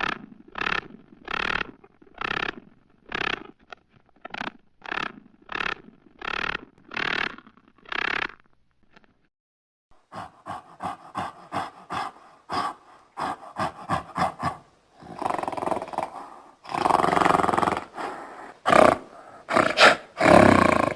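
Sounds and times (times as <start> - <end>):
animal grunting: 0.0 - 3.6, 10.0 - 20.9
animal drawn-out rough calls: 0.0 - 8.4, 10.0 - 20.9.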